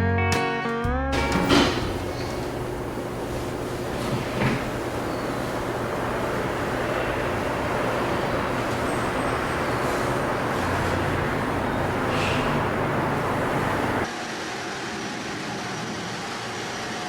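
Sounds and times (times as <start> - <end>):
vehicle road noise rumble: 1.2 - 14.1.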